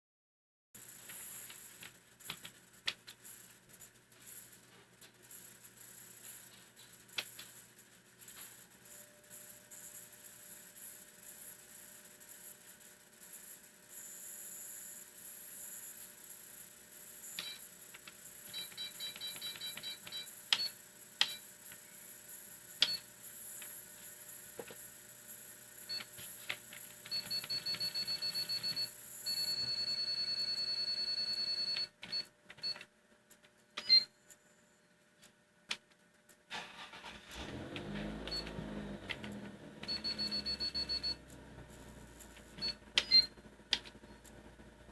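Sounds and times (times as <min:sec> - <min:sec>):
computer speaker beeps: 0:39.9 - 0:41.2.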